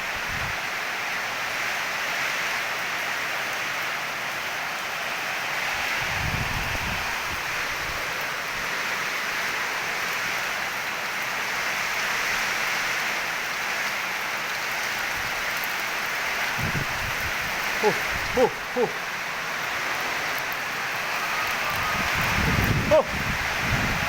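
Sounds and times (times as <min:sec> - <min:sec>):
heavy rain pouring: 0:00.0 - 0:24.0.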